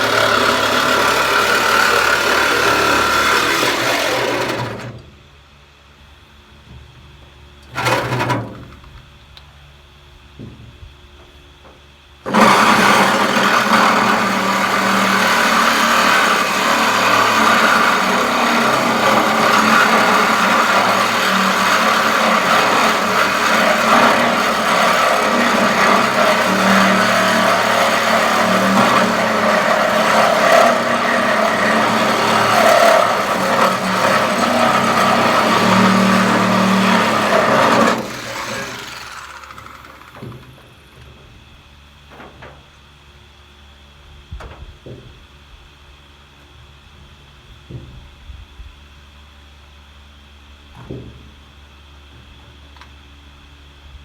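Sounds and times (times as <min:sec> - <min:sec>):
power cutting tool cutting sheet steel: 0:00.0 - 0:04.9, 0:12.3 - 0:40.6.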